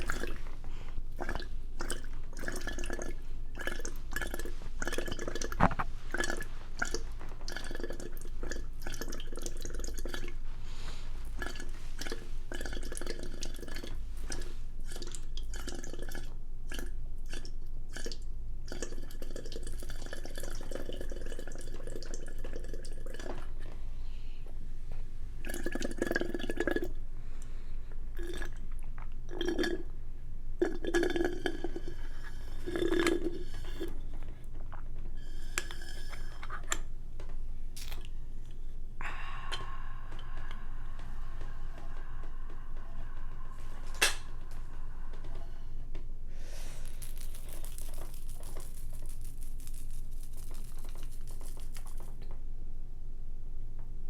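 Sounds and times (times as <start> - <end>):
wet mouth eating and slurping: 30.6 - 34.1, 46.6 - 52.2.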